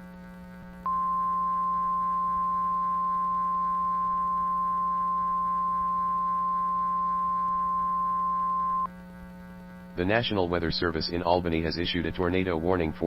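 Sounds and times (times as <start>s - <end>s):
low steady hum: 0.0s - 13.0s
steady warning alarm tone: 0.8s - 8.9s.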